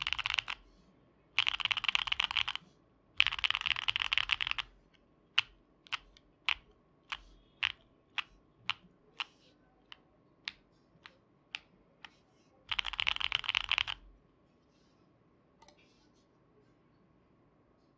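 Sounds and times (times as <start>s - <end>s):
clacky mechanical keyboard keystrokes: 0.0s - 0.6s, 1.4s - 2.6s, 3.2s - 4.6s, 12.7s - 14.0s.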